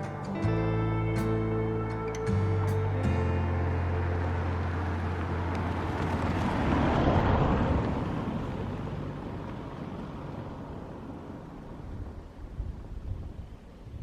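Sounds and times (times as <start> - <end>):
car driving past on gravel: 2.4 - 13.0.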